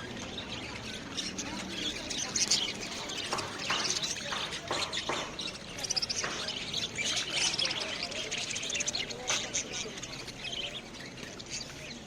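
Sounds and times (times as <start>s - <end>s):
parrots chirping and squawking: 0.3s - 12.0s.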